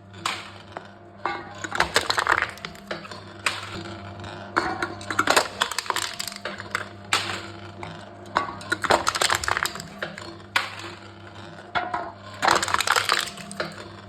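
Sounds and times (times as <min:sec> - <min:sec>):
crushing machine hum: 0:00.0 - 0:14.0
cans crumpling and crackling: 0:05.2 - 0:06.8, 0:08.8 - 0:10.3, 0:12.4 - 0:13.8.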